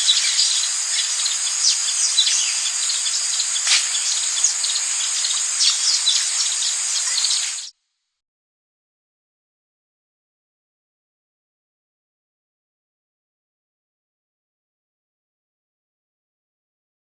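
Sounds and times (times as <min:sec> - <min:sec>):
bird chirps: 0:00.0 - 0:07.7
insects chorus: 0:00.0 - 0:07.7.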